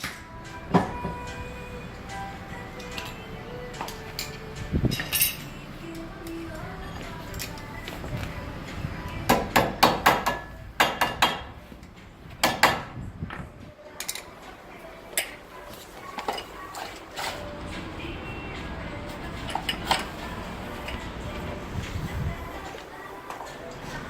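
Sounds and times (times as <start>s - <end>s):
metal tools clanking: 2.8s - 6.0s, 15.2s - 17.5s, 19.4s - 21.0s.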